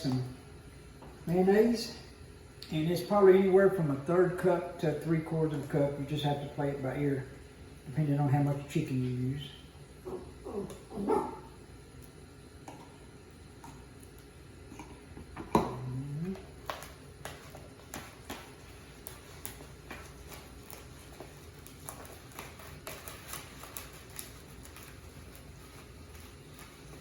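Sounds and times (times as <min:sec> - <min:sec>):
short low vocal sound: 0:15.6 - 0:16.5.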